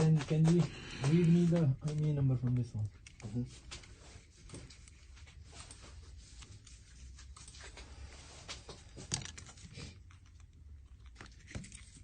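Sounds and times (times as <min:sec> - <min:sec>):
rustling: 0:00.0 - 0:12.0.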